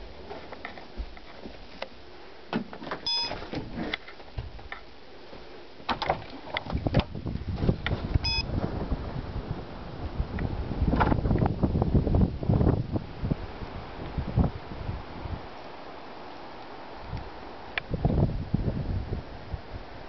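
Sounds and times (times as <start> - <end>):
short electronic beeps: 3.1 - 3.4, 8.2 - 8.5
clicks and knocks of movement: 5.9 - 7.1
wind rumbling on microphone: 6.0 - 20.0.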